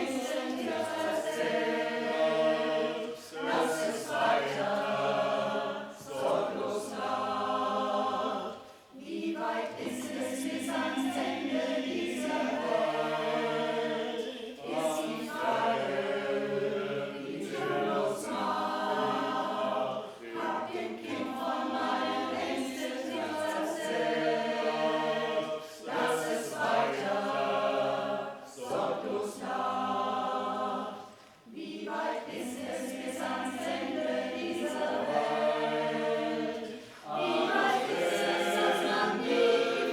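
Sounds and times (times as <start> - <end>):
vocal ensemble singing: 0.0 - 39.9.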